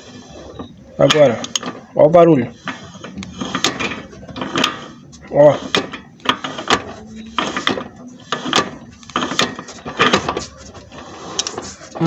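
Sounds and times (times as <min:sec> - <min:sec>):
drive shaft joint clicking: 0:00.0 - 0:12.0.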